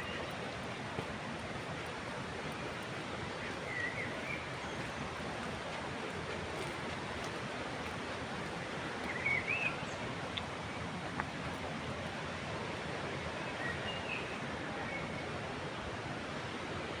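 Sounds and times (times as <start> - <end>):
waterfall rushing: 0.0 - 12.5.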